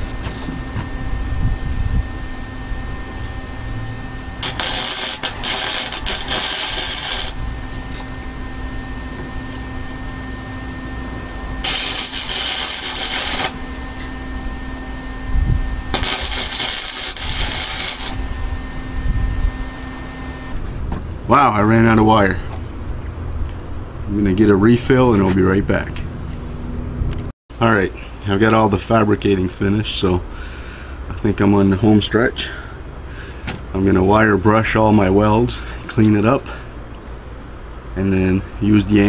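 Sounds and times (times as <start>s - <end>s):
low hum: 0.0s - 27.3s
welder arc crackling: 4.4s - 8.3s, 11.6s - 14.2s, 15.9s - 18.5s.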